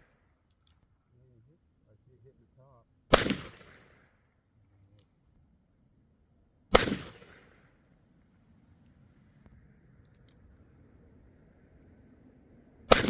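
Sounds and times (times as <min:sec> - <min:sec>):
revolver gunshots: 0:03.1 - 0:04.2, 0:06.7 - 0:07.8.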